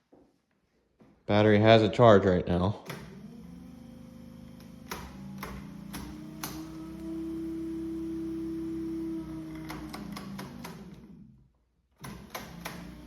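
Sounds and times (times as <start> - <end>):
electric motor hum: 2.9 - 13.0.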